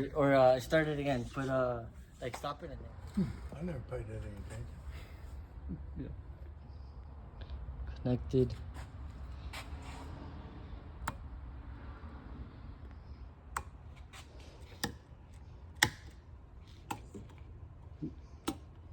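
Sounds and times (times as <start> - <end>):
sharp clicks and taps: 11.0 - 11.2, 15.8 - 16.2, 18.4 - 18.8.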